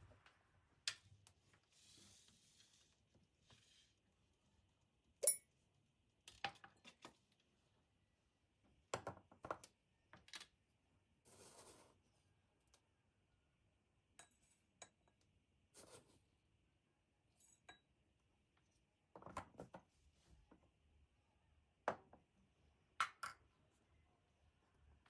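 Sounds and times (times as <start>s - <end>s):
sharp ringing clink: 5.2s - 5.4s.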